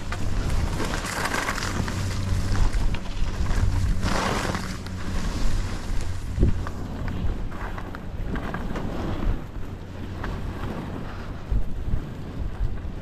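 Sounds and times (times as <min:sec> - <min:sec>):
low rumble: 0:00.0 - 0:13.0
wind rushing over microphone: 0:00.0 - 0:13.0
skis hissing over snow: 0:04.0 - 0:05.9.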